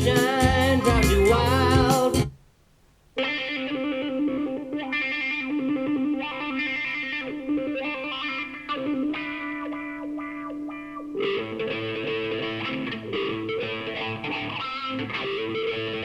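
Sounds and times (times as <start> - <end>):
electric guitar instrumental: 0.0 - 2.4, 3.2 - 16.0
song over loudspeakers: 0.0 - 2.4.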